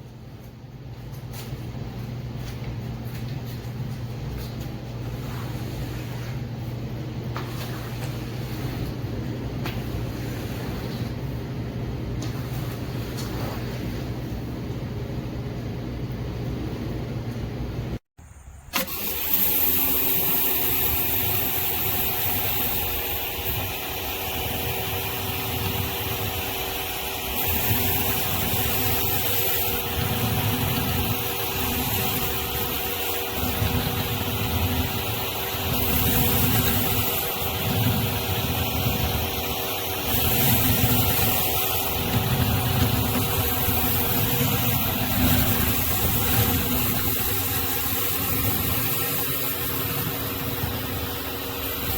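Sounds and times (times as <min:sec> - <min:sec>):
pressure washer motor humming: 0:18.7 - 0:51.9
water spraying hiss: 0:18.8 - 0:51.9.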